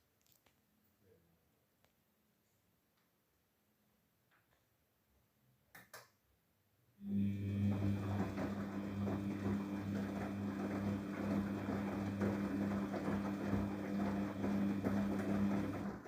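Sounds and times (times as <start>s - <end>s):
washing machine humming: 7.0s - 16.0s.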